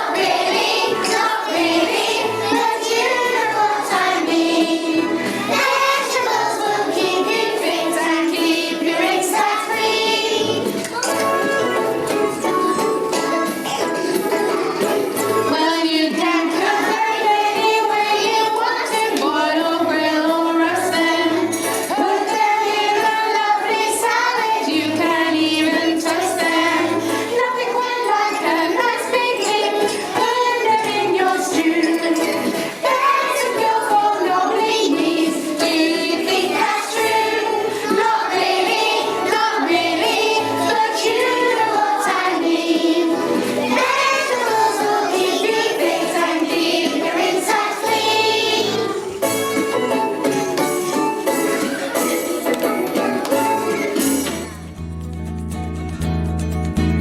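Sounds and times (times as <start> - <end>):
children singing: 0.0 - 54.6
backing track with bass: 54.5 - 57.0.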